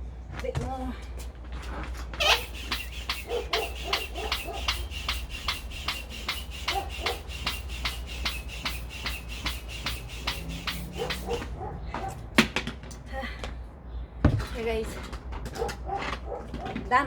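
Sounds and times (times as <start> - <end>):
air pump puffing: 2.0 - 11.7.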